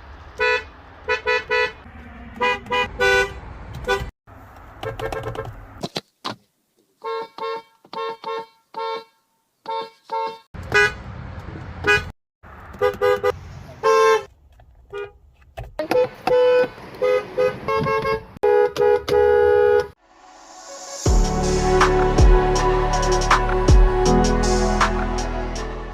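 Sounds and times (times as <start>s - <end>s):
road noise: 0.0s - 25.9s
car horns honking: 0.4s - 4.1s, 4.8s - 5.6s, 7.0s - 11.1s, 11.8s - 12.1s, 12.7s - 14.3s, 15.8s - 20.0s.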